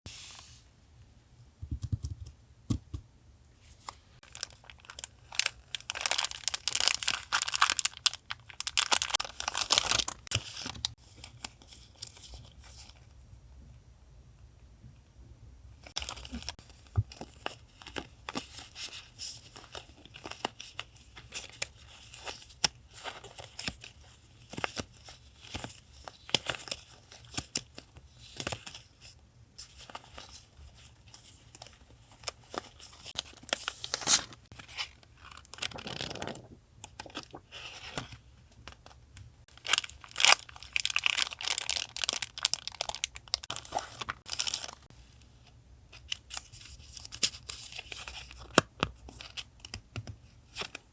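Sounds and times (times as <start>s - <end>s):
paper rustling and crinkling: 15.9s - 44.9s.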